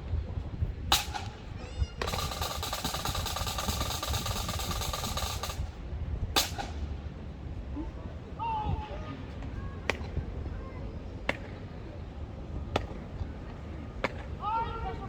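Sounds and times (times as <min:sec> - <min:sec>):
sharp crack: 0:00.9 - 0:01.4, 0:06.4 - 0:06.8
snare drum roll: 0:02.0 - 0:05.7.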